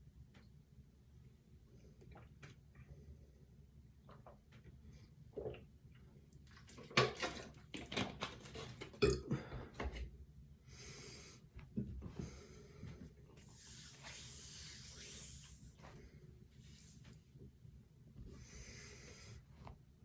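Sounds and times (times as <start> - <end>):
person burping: 9.0 - 9.5
noisy breaths: 10.6 - 16.5, 18.2 - 19.7.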